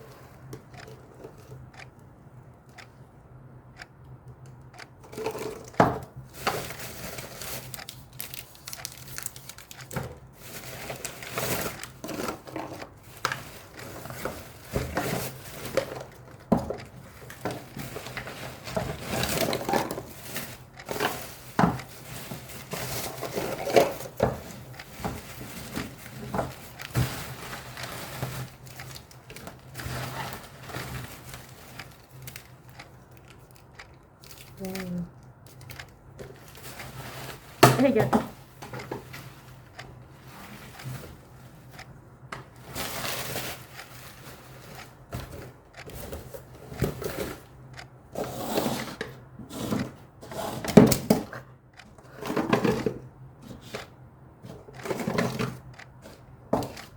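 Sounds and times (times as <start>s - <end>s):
wrappers crinkling and rustling: 6.3s - 16.2s, 17.6s - 37.9s.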